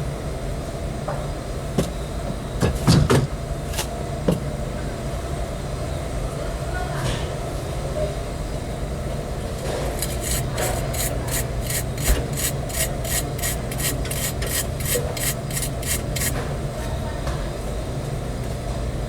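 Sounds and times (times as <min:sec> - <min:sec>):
steady low hum: 0:07.6 - 0:19.0
scrubbing strokes: 0:09.8 - 0:16.3.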